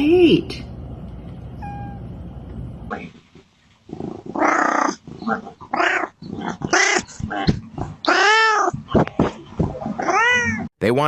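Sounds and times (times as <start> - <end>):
cat hissing and growling: 3.9 - 10.7.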